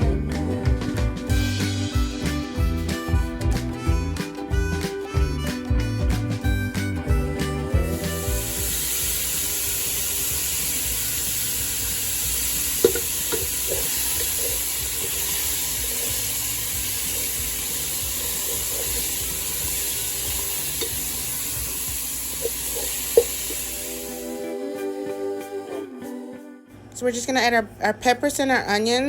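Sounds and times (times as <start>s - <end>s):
meat sizzling in a frying pan: 7.8s - 24.4s.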